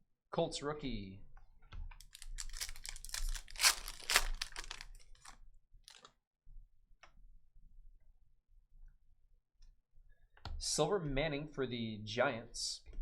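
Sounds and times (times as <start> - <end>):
wrapper tearing and crinkling: 2.0 - 6.1.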